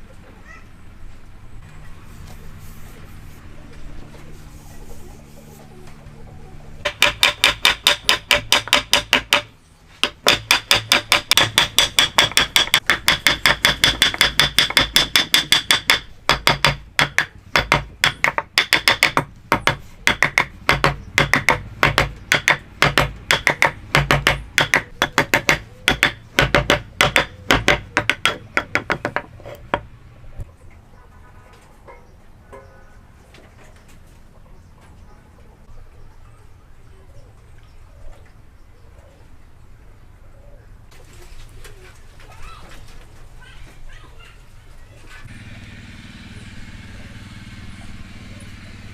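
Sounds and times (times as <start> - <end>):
hammer striking chisel: 6.8 - 29.9.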